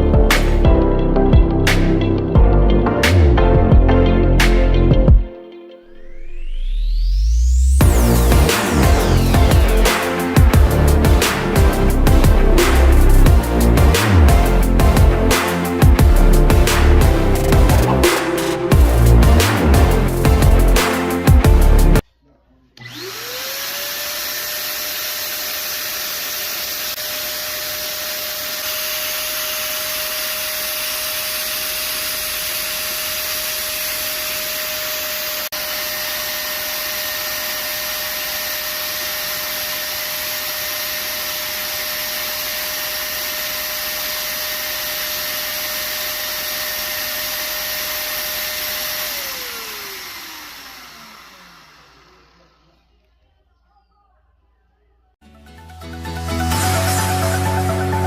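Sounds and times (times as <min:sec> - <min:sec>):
small electric fan motor whine: 0:22.8 - 0:53.0.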